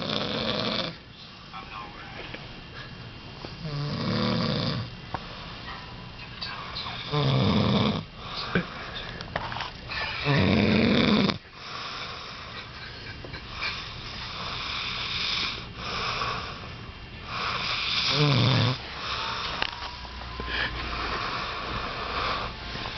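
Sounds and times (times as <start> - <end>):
man snoring heavily: 0.0 - 1.0, 3.6 - 4.9, 7.0 - 8.7, 10.2 - 12.5, 13.8 - 19.6, 20.9 - 22.6
noisy breathing: 2.7 - 22.9.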